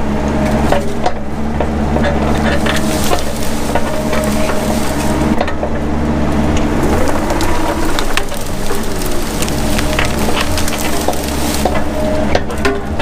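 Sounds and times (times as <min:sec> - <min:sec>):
excavator engine under load: 0:00.0 - 0:13.0
brush crackling and snapping: 0:02.2 - 0:05.6, 0:06.4 - 0:12.7
sharp wood cracks: 0:02.3 - 0:05.4, 0:06.7 - 0:12.4.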